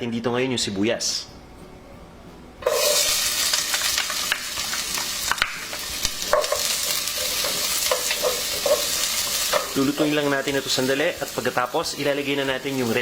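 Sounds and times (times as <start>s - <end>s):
utensil scraping and knocking pot: 2.6s - 3.2s, 6.2s - 9.8s
onions sizzling in oil: 2.6s - 13.0s.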